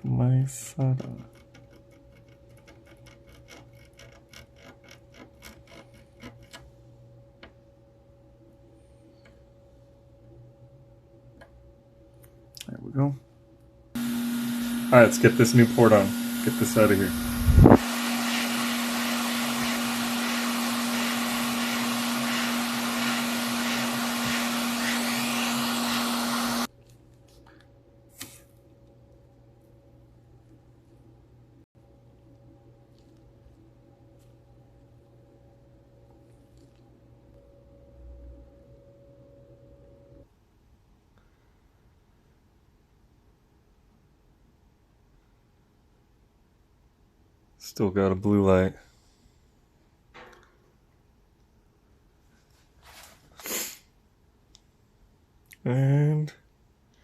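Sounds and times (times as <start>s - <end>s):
faint steady hum: 0.0s - 52.7s
blower motor hissing and humming: 14.0s - 26.7s.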